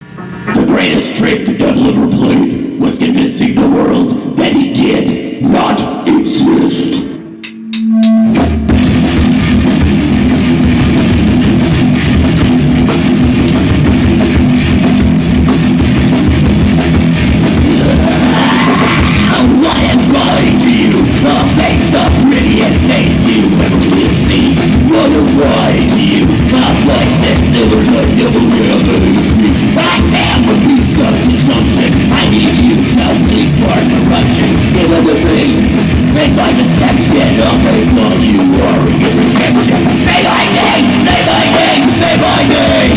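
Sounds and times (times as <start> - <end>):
heavy rock band playing: 6.4 - 42.9
rising guitar slide: 7.4 - 10.9, 17.4 - 20.9.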